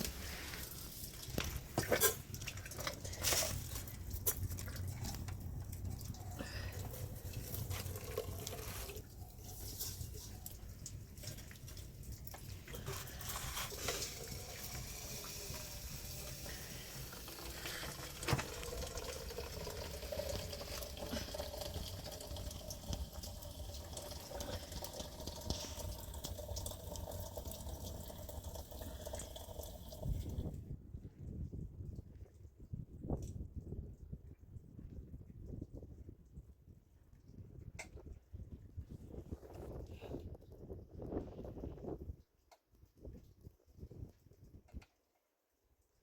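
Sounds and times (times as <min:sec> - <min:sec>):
water running and splashing: 0:00.0 - 0:30.4.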